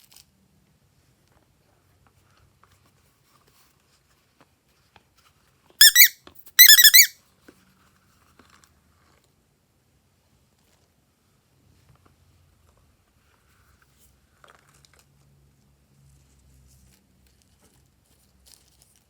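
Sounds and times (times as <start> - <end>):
high-pitched squeaks: 5.8 - 7.1.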